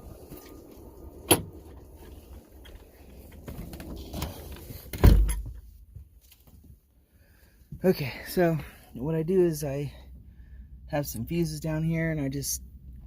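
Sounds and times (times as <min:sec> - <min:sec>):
door shutting thump: 0:05.0 - 0:05.6.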